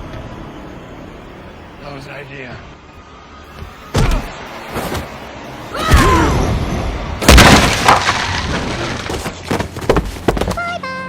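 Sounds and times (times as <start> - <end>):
booming crash impacts: 7.2 - 9.1.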